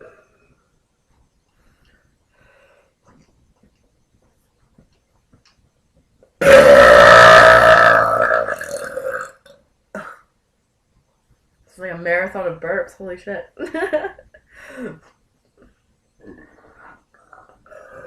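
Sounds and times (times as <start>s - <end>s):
woman burping loudly: 6.4s - 10.3s.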